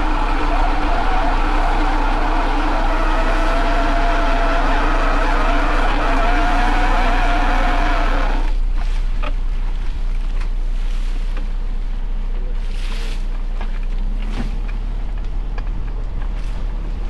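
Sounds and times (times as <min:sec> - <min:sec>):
motor machinery whining: 0:00.0 - 0:08.6.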